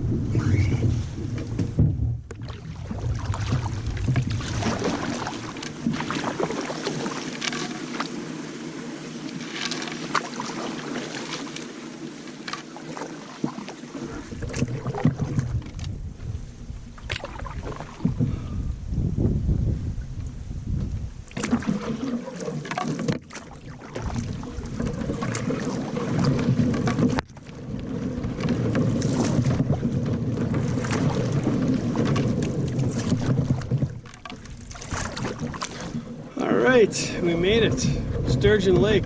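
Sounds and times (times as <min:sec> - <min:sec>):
wind on microphone: 0:00.0 - 0:07.0, 0:14.0 - 0:22.2, 0:23.7 - 0:39.0
paddle splashing in water: 0:00.2 - 0:18.7, 0:20.1 - 0:39.0.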